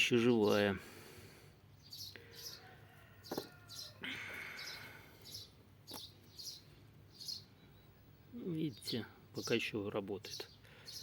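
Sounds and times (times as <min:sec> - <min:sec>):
small bird chirping: 0:01.7 - 0:11.0.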